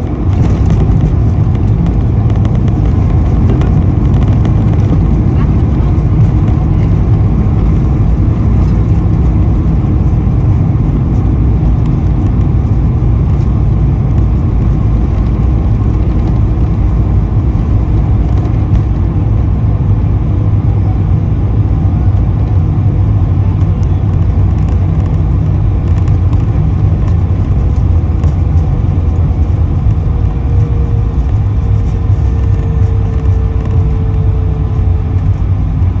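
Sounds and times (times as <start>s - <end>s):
jet airliner engines rumbling: 0.0s - 36.0s.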